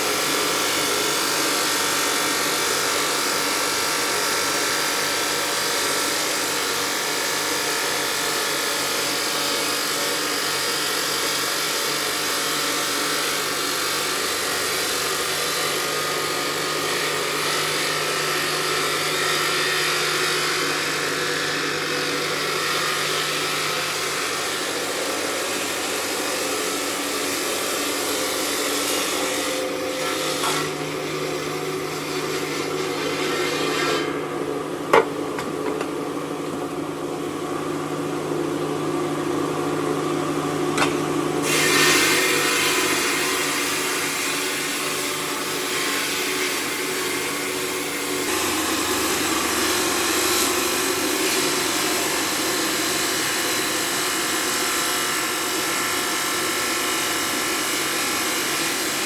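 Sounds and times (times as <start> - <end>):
low machine hum: 30.8 - 41.6
stone machinery grinding: 34.9 - 36.7.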